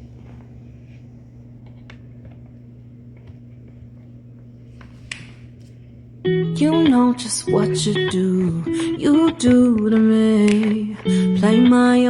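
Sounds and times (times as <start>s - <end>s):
steady low hum: 0.0s - 12.0s
faint clicks and taps: 8.8s - 11.1s.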